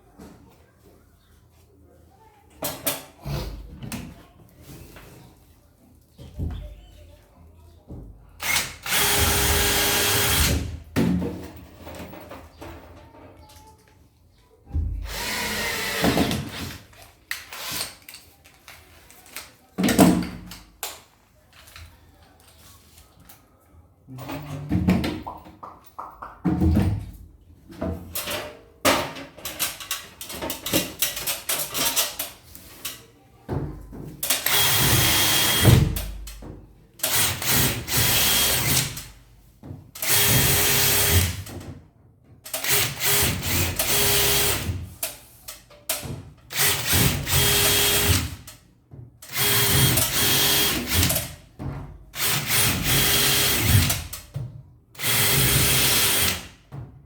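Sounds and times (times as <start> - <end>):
power drill-driver bursts: 8.4 - 10.6, 15.1 - 16.7, 34.4 - 35.8, 37.0 - 39.0, 40.0 - 41.4, 42.6 - 44.7, 46.5 - 48.3, 49.3 - 51.2, 52.2 - 54.0, 55.0 - 56.4.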